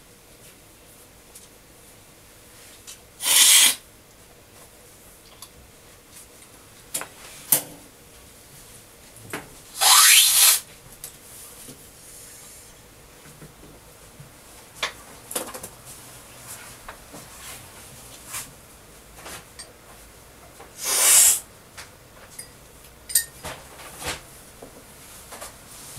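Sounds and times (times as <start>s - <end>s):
loud coffee slurps: 3.2s - 3.8s, 20.8s - 21.4s.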